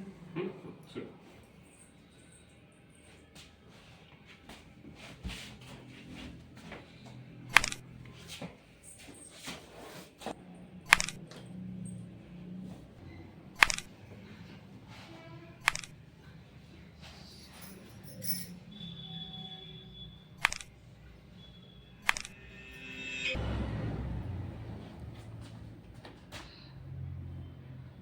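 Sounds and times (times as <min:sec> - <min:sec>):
sharp back cracking clicks: 0:10.9 - 0:11.2, 0:13.6 - 0:13.9, 0:15.6 - 0:15.9, 0:20.4 - 0:20.7.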